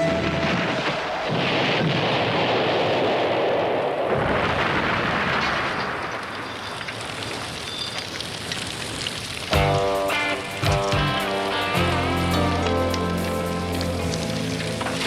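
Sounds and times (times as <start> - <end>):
loud rushing noise: 0.0 - 3.9.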